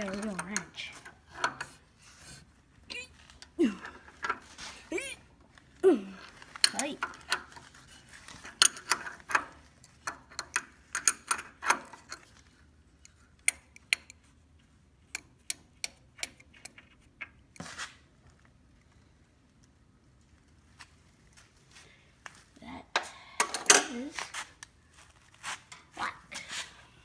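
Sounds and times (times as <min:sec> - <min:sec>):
wrench metal clicks: 0:00.0 - 0:01.8, 0:08.4 - 0:12.3, 0:13.0 - 0:14.2, 0:15.1 - 0:17.4.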